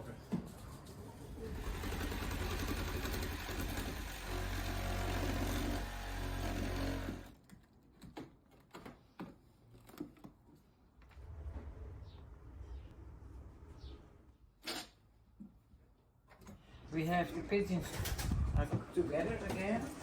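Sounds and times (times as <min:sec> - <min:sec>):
power tool motor running: 0:01.6 - 0:07.3.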